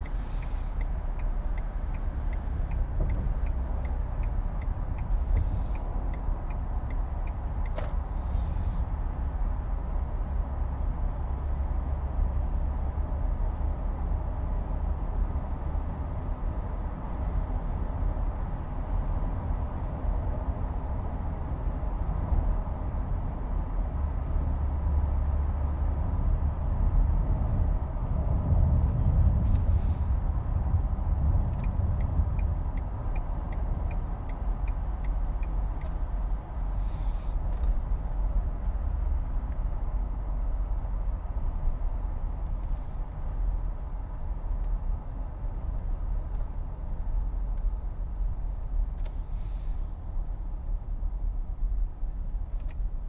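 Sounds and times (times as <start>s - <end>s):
even ticks: 0.0s - 7.8s, 31.5s - 36.4s
highway traffic rumble: 0.0s - 53.0s
short hissing whooshes: 0.1s - 0.8s, 8.1s - 8.8s, 36.7s - 37.4s, 49.2s - 50.0s.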